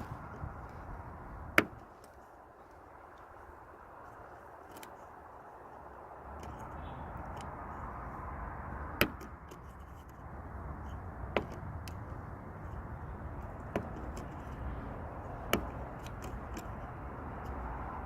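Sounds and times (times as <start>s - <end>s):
lock pick metallic clicks: 15.2s - 17.6s.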